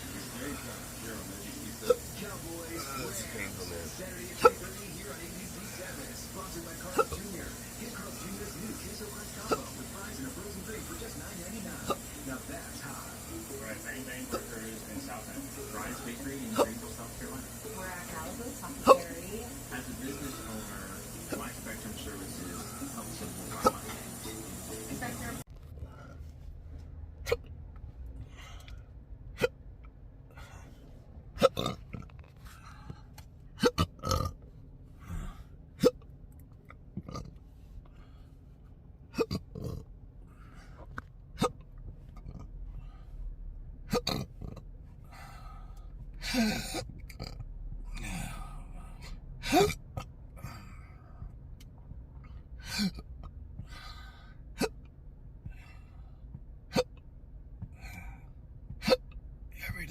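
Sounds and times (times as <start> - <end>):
man hiccuping: 1.8 - 2.1, 2.7 - 4.8, 6.9 - 7.2, 9.4 - 9.8, 31.4 - 31.8, 33.6 - 34.4, 39.1 - 39.8, 41.4 - 41.6, 43.9 - 44.3, 49.4 - 50.9, 54.6 - 54.8, 56.7 - 57.0, 58.8 - 59.1
sliding burps: 31.4 - 32.2, 33.6 - 36.0, 37.0 - 37.4, 39.1 - 39.9, 43.9 - 44.6, 46.2 - 48.4.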